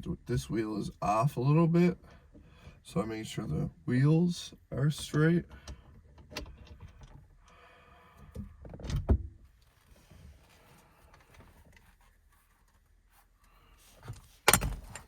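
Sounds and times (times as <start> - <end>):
faint scraping and rustling: 9.5 - 15.0.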